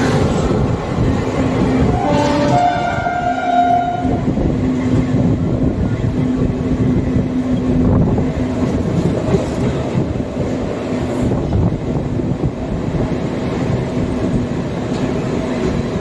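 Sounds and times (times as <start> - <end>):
train wheels rumbling: 0.0 - 16.0.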